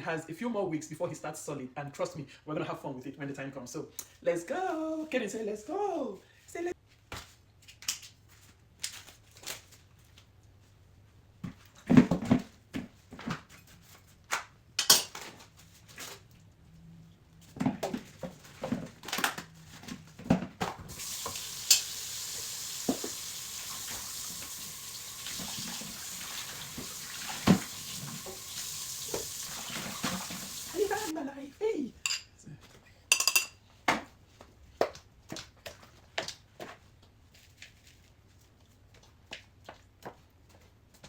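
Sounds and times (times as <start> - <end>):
steady hiss: 20.9 - 31.2.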